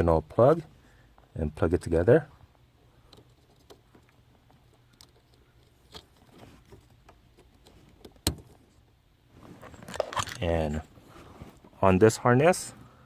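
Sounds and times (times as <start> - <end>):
plastic plugs rustling: 3.1 - 8.8, 9.4 - 11.7.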